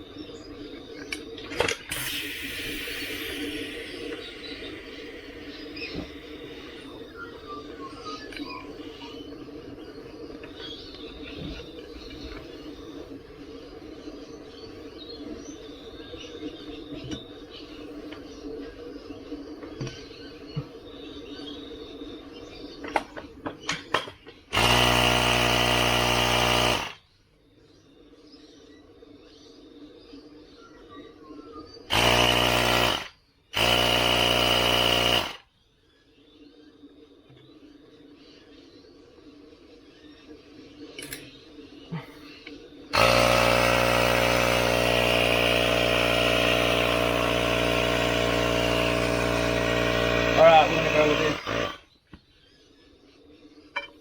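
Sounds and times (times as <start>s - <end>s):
power tool motor running: 1.5s - 7.1s, 24.5s - 27.0s, 31.9s - 35.4s, 42.9s - 51.9s.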